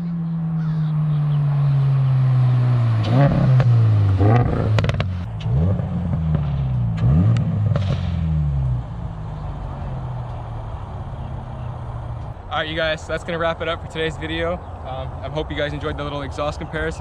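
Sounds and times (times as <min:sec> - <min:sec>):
exhaust cracks: 0:00.0 - 0:14.4
car engine revving: 0:00.0 - 0:17.0.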